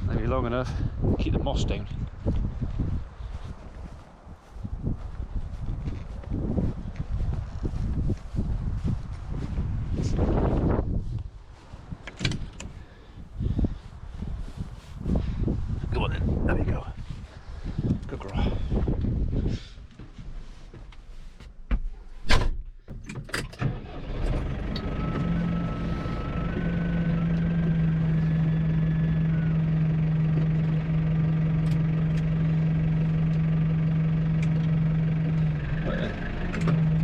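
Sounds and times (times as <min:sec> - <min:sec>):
engine starting and running: 0:23.0 - 0:37.0.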